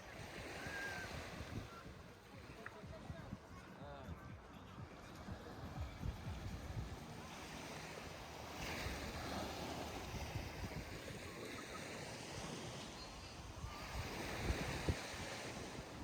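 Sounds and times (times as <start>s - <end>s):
surf washing onto sandy beach: 0.0s - 3.5s, 4.9s - 16.0s.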